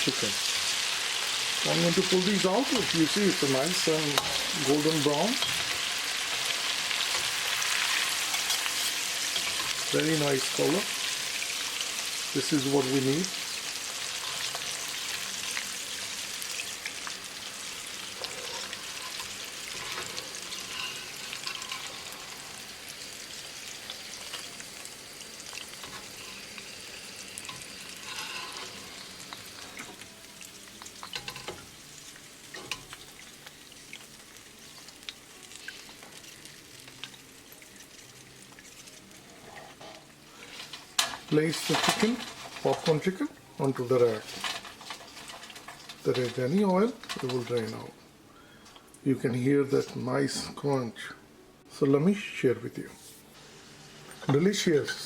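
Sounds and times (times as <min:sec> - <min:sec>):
chicken deep-frying in oil: 0:00.0 - 0:39.4.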